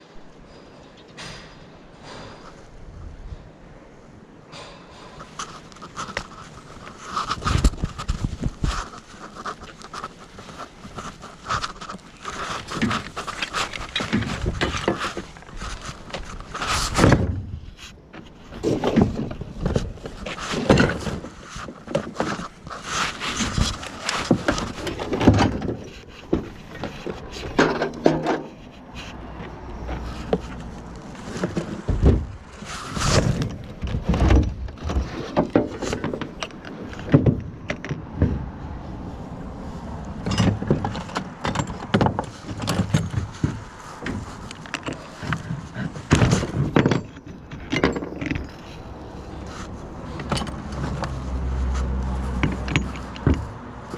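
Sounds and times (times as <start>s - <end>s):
knocking and clattering: 23.4s - 28.6s, 40.2s - 48.7s, 52.3s - 53.6s.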